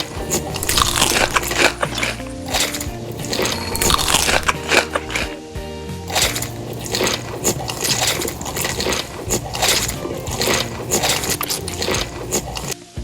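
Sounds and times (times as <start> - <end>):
crunchy biting and chewing: 0.0 - 5.4, 6.0 - 12.8
background music: 0.0 - 13.0.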